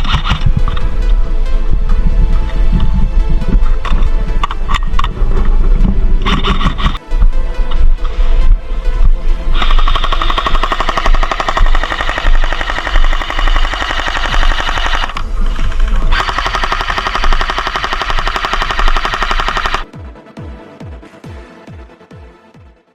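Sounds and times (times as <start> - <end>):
electronic music with deep bass: 0.0 - 22.8
rapid even rattle: 9.6 - 15.3, 16.1 - 19.9.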